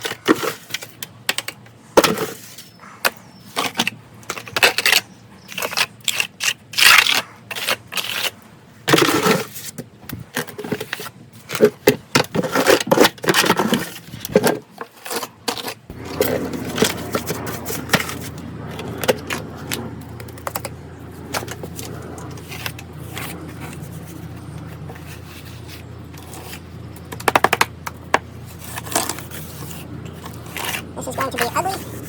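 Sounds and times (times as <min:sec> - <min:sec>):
hand tool scraping wet compound: 0:02.0 - 0:09.8, 0:10.4 - 0:20.6, 0:21.3 - 0:27.0, 0:28.4 - 0:32.0
steady low hum: 0:15.9 - 0:32.0.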